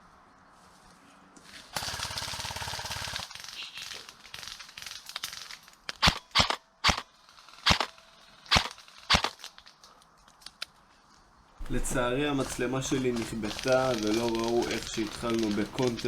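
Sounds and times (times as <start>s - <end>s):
airsoft rifle full-auto burst: 1.7s - 9.4s, 11.6s - 16.0s
airsoft gun single shots: 6.0s - 7.0s, 7.6s - 7.9s, 8.5s - 9.4s.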